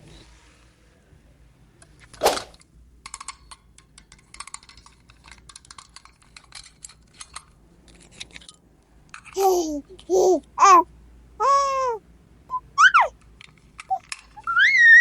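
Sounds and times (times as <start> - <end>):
plastic toy pieces clicking: 3.0 - 10.1, 13.4 - 15.0.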